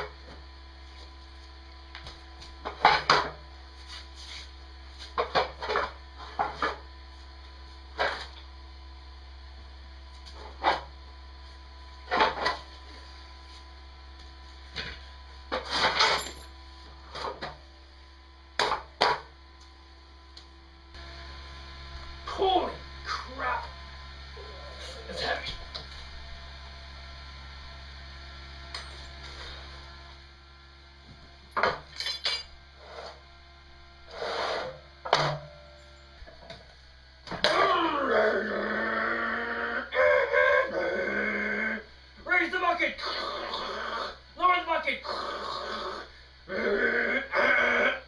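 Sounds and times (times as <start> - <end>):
steady low hum: 0.0 - 48.0
metal scrape: 34.1 - 34.8.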